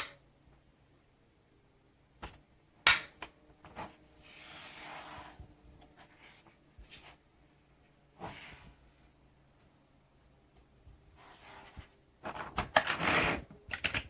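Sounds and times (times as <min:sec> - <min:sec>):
rubbing sound: 0:03.7 - 0:07.2, 0:11.2 - 0:13.4.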